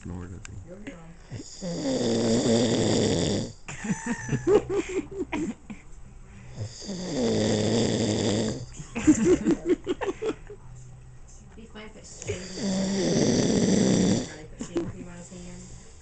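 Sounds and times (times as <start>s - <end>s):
man snoring heavily: 1.4s - 3.6s, 6.5s - 8.7s, 12.3s - 14.4s.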